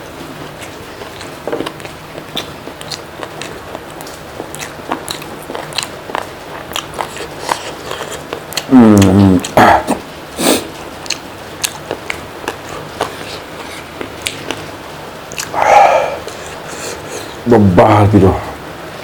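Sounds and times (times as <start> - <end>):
wet chewing and biting clicks: 0.4 - 10.0, 10.7 - 17.4
voiced groan: 15.5 - 16.4
sharp breaths: 15.5 - 17.4.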